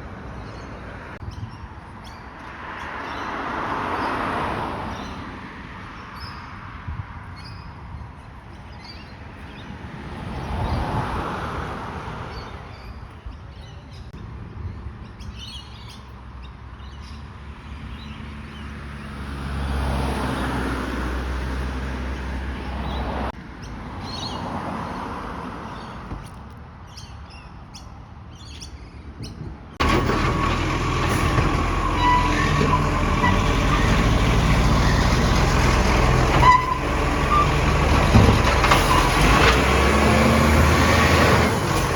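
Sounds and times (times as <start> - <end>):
vehicles passing: 0.0 - 41.9
birds chirping: 21.7 - 25.0
garbage truck engine running: 29.8 - 41.9.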